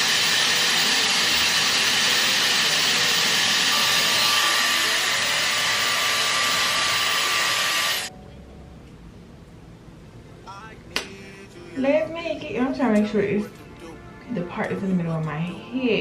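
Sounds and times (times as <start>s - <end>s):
hair dryer blowing: 0.0s - 8.1s.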